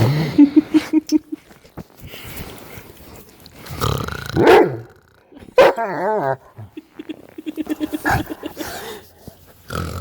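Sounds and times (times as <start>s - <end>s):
dog barking: 4.4s - 4.9s, 5.6s - 5.8s.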